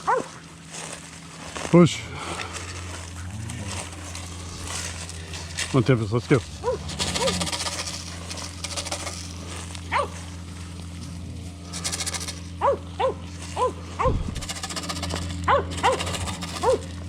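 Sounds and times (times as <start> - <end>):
steady low hum: 0.0 - 17.0
dog barking in sharp yips: 0.1 - 0.3, 9.9 - 10.2, 12.6 - 14.2, 15.5 - 16.0, 16.6 - 16.9.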